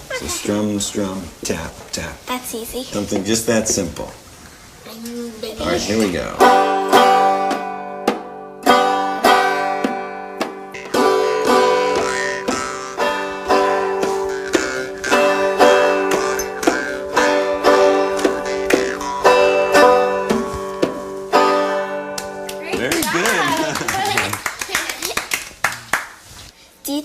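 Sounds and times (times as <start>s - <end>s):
acoustic guitar playing: 5.7s - 24.3s
banjo plucking and strumming: 5.9s - 22.9s
taps on banjo head: 6.4s - 22.4s.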